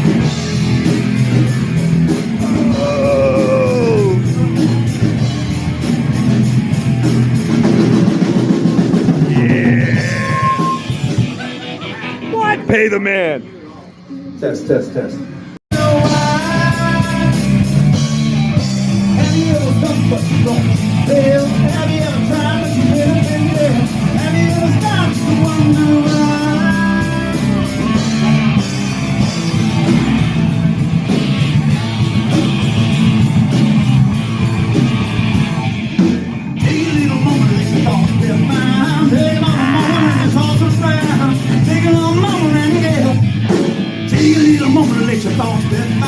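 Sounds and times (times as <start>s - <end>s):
drums on a steady beat: 0.0s - 11.4s, 15.7s - 46.0s
electric guitar: 0.0s - 13.0s, 15.2s - 46.0s
bass: 0.0s - 46.0s
person singing: 2.5s - 4.3s, 9.3s - 10.8s, 38.6s - 40.6s.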